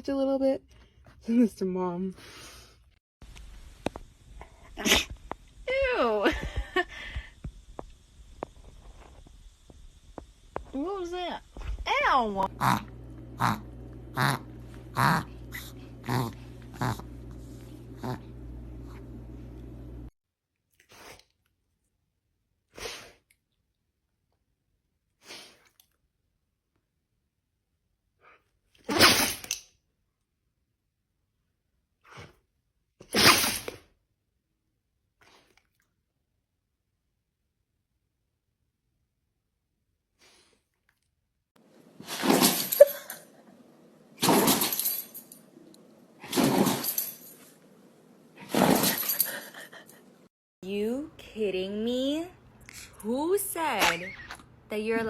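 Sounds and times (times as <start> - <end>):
dog sneezing: 22.7 - 23.2, 25.2 - 25.7, 28.8 - 29.5, 33.0 - 33.8, 42.0 - 43.5, 44.2 - 45.2, 46.2 - 47.5, 48.4 - 50.1.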